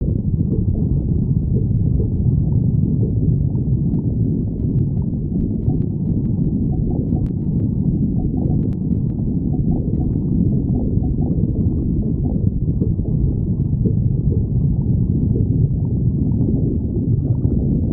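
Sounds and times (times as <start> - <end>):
stomach growling: 0.0 - 17.9
faint clicks: 4.6 - 11.4.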